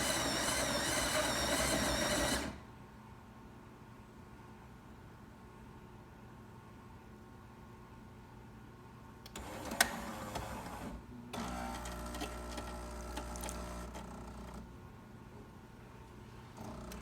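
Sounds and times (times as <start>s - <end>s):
espresso machine whirring: 0.0s - 2.6s.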